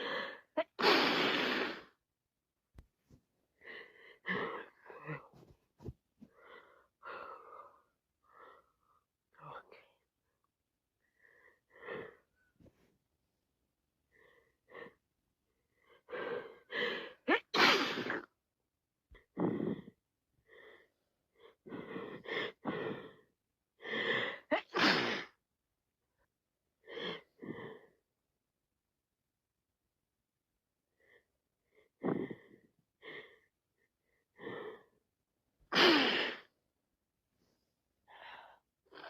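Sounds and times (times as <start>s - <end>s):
person sneezing: 17.4s - 18.3s, 35.7s - 36.4s.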